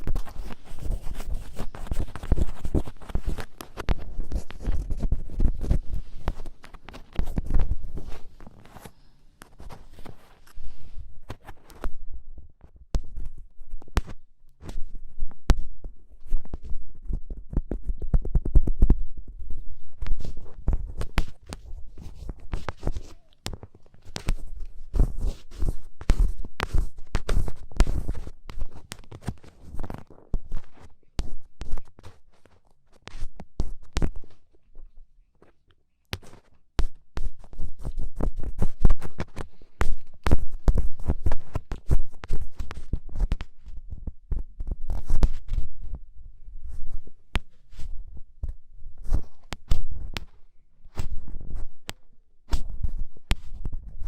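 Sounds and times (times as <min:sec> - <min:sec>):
ear pick scraping microphone: 0:00.0 - 0:12.0.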